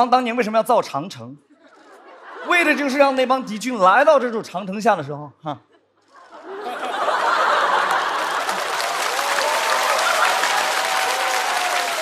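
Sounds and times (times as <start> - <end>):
audience laughing: 1.6 - 3.6, 5.7 - 12.0
audience applauding: 6.9 - 12.0.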